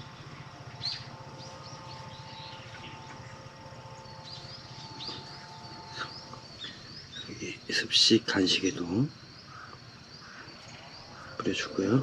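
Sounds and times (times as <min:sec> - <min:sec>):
faint low hum: 0:00.0 - 0:12.0
small birds chirping: 0:00.0 - 0:12.0.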